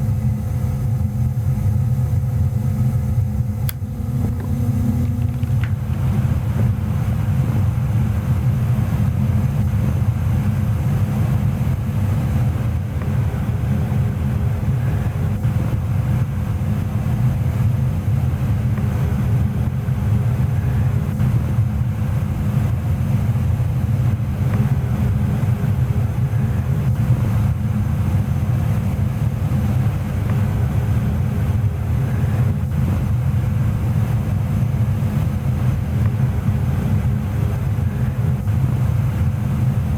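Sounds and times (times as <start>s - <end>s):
faint steady hum: 0.0s - 39.9s
furnace rumbling: 0.0s - 39.9s.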